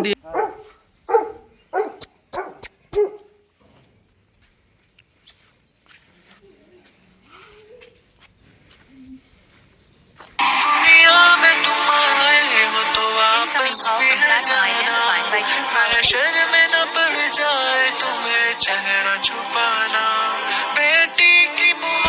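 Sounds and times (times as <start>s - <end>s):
dog barking sharply: 0.0s - 3.3s
loud music with singing: 10.4s - 22.0s.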